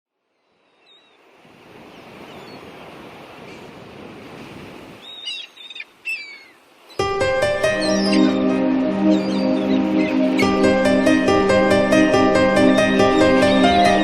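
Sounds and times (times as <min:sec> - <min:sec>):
birds chirping: 0:00.4 - 0:01.3, 0:05.0 - 0:14.0
surf rushing: 0:01.3 - 0:05.2.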